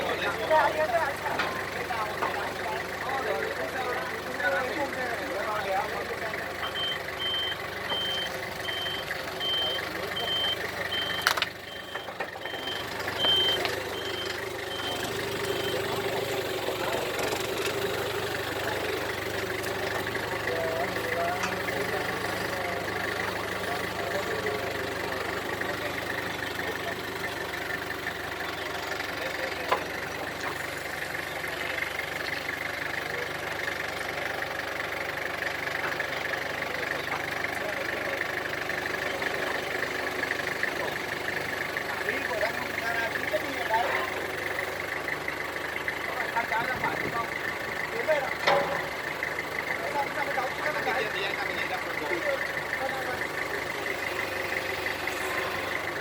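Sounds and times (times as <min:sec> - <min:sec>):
engine idling: 0:00.0 - 0:56.0
vehicle reversing alarm beeping: 0:05.8 - 0:17.2, 0:20.0 - 0:32.0, 0:38.8 - 0:41.2.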